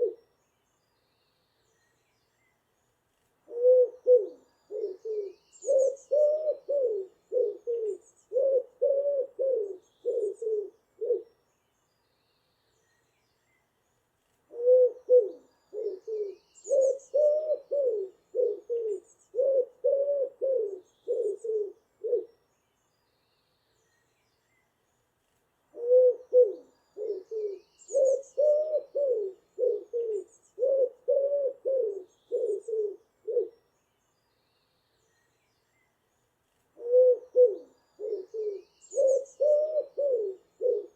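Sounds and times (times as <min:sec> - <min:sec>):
pigeon cooing: 0:00.0 - 0:00.2, 0:03.5 - 0:11.3, 0:14.5 - 0:22.3, 0:25.8 - 0:33.5, 0:36.8 - 0:40.9
faint high bird chirps: 0:00.0 - 0:25.0, 0:25.8 - 0:40.9.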